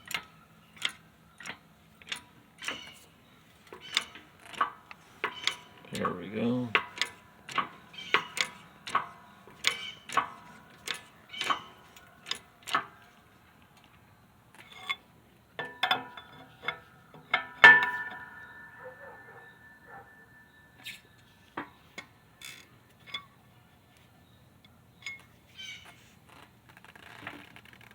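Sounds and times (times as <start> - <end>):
metal clicks and clinks: 0.0 - 15.0, 20.8 - 23.4, 25.0 - 25.4
loud metal clank with ringing: 17.3 - 21.1.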